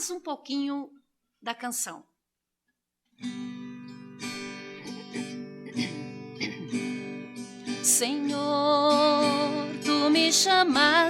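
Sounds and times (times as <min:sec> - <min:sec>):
acoustic guitar strumming: 0:03.2 - 0:11.0.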